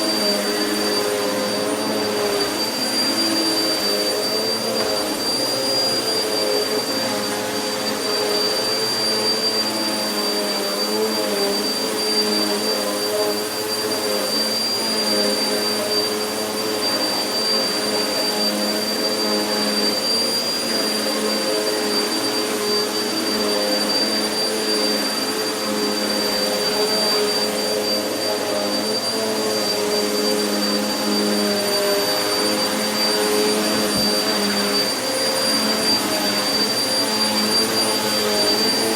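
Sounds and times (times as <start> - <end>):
high-pitched whine: 0.0 - 38.9
vacuum cleaner on carpet: 0.0 - 38.9.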